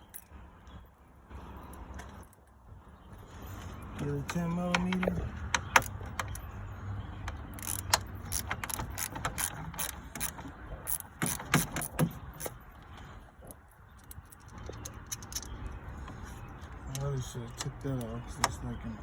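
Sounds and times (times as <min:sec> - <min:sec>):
ratchet wrench clicking: 0:07.2 - 0:12.5.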